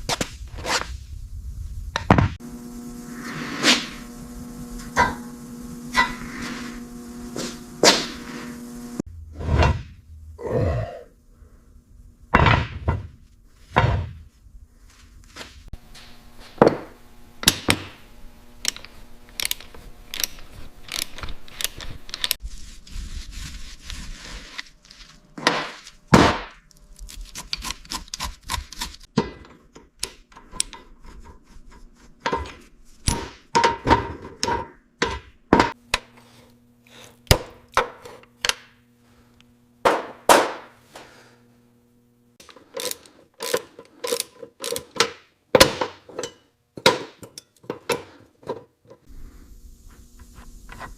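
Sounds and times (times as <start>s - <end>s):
low steady hum: 1.0s - 27.8s, 35.4s - 44.5s
tools and parts clanking: 18.6s - 22.4s, 42.4s - 49.1s.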